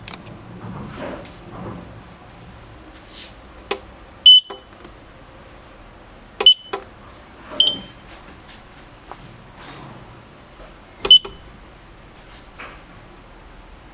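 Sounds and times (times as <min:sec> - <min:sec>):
short high beeps: 0:04.3 - 0:04.6, 0:06.4 - 0:06.8, 0:07.6 - 0:08.0, 0:11.1 - 0:11.4
timer button clicks: 0:06.4 - 0:06.8, 0:07.6 - 0:07.9.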